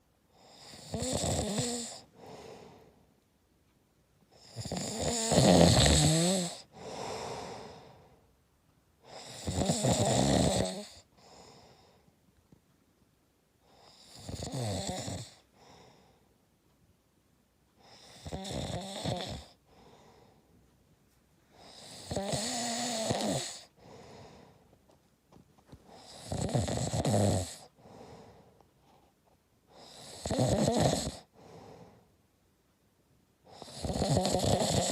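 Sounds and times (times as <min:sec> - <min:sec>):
man snoring: 0:00.4 - 0:02.5, 0:04.4 - 0:07.9, 0:09.1 - 0:11.1, 0:13.8 - 0:15.4, 0:17.9 - 0:19.6, 0:21.6 - 0:23.7, 0:25.9 - 0:27.7, 0:29.7 - 0:31.3, 0:33.5 - 0:34.9
quiet breath: 0:01.6 - 0:03.3, 0:06.1 - 0:09.4, 0:10.8 - 0:12.6, 0:15.3 - 0:16.7, 0:19.4 - 0:25.0, 0:27.5 - 0:30.1, 0:31.1 - 0:32.3.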